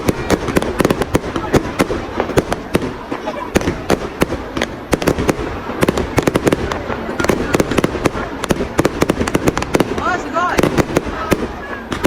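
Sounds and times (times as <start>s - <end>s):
fireworks bangs and crackling pops: 0.0s - 12.0s.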